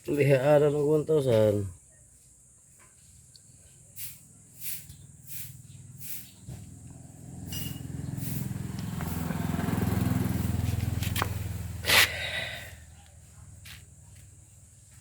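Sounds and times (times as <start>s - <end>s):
short hissing strokes: 3.9s - 6.5s, 7.5s - 8.5s, 11.8s - 12.7s
motor vehicle engine running: 4.9s - 15.0s.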